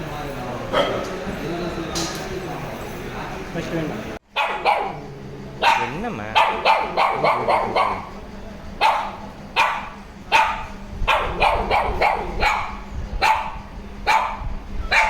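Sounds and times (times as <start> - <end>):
dog barking: 0.7 - 1.1, 4.3 - 8.2, 8.8 - 15.0.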